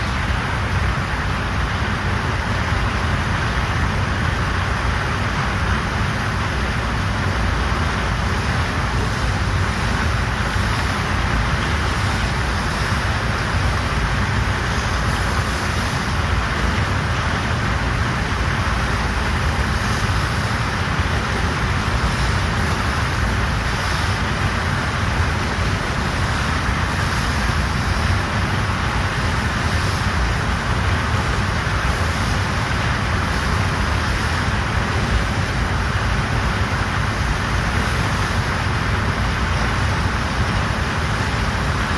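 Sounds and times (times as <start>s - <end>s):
pumped water rushing: 0.0s - 41.9s.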